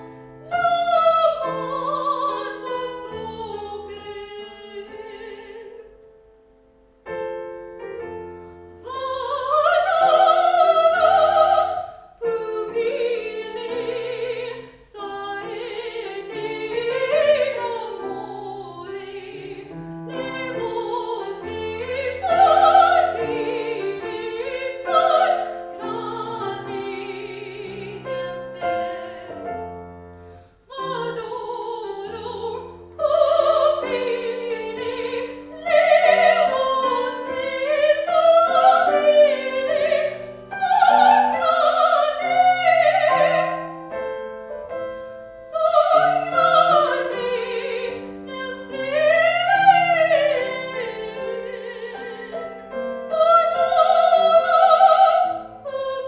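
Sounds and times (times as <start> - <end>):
piano: 0.0 - 56.0
operatic singing: 8.8 - 29.8, 30.6 - 43.9, 45.3 - 56.0.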